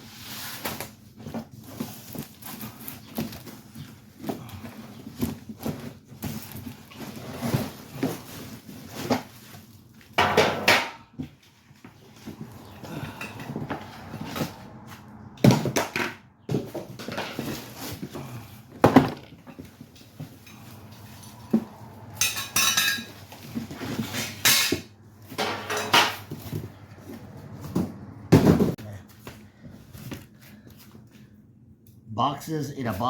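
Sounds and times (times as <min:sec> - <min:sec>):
rustling and scraping: 0:00.0 - 0:10.2, 0:11.0 - 0:31.4
grill parts clattering: 0:18.9 - 0:26.6.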